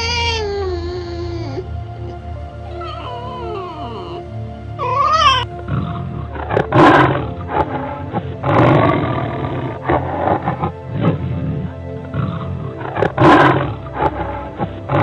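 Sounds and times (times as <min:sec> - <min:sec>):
wavering cat-like call: 0:00.0 - 0:01.7, 0:02.6 - 0:05.4
background music: 0:00.0 - 0:15.0
big cat roaring: 0:02.7 - 0:04.2.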